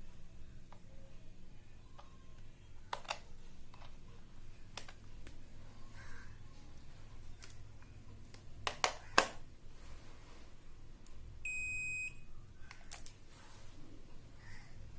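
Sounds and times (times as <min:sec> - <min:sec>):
multimeter continuity beep: 0:11.4 - 0:12.3.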